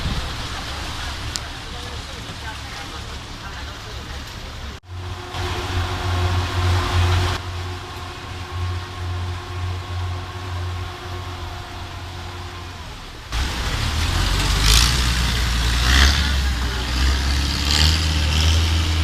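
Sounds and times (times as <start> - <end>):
motor engine humming: 0.0 - 19.0
rushing noise: 4.6 - 19.0.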